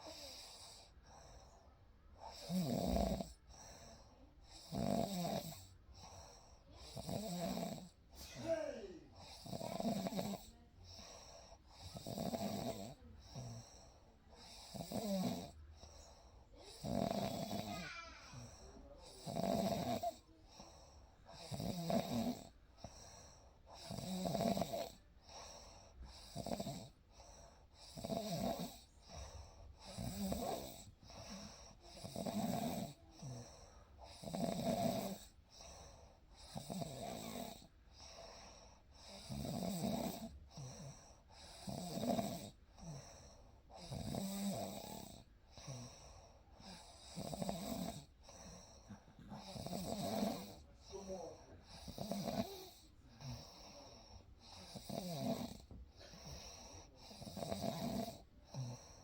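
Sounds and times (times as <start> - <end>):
person snoring: 2.3 - 3.4, 6.8 - 10.6, 11.8 - 13.7, 16.6 - 20.3, 21.3 - 22.5, 23.8 - 25.0, 29.8 - 33.5, 39.0 - 43.2, 46.6 - 59.0.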